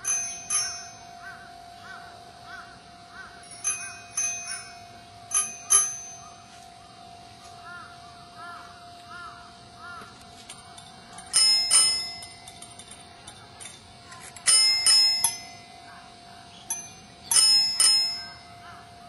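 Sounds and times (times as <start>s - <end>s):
small high-pitched bells struck: 0.0s - 1.3s, 3.4s - 6.7s, 10.4s - 18.7s
bird calling: 0.7s - 4.7s, 5.6s - 11.4s, 18.2s - 19.0s.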